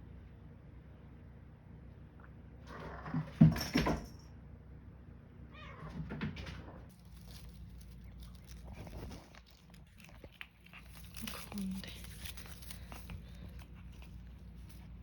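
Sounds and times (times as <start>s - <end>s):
young cat meowing: 5.5s - 6.0s.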